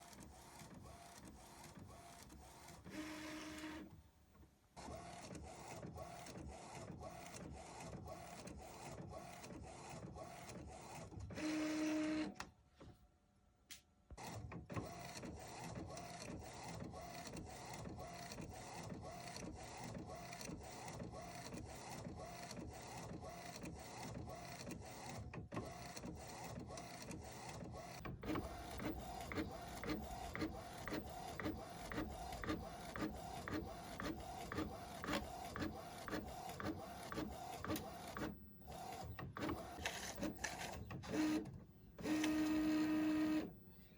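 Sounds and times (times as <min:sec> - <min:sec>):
printer whirring: 0:00.0 - 0:04.0, 0:04.8 - 0:12.4, 0:14.2 - 0:43.8
printer head sweeping: 0:28.2 - 0:43.6.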